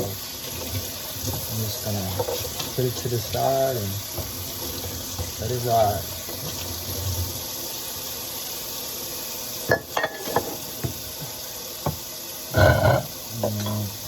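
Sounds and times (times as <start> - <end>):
water running into sink: 0.0 - 14.0
dishes and cutlery clinking: 9.7 - 10.6, 12.6 - 13.8.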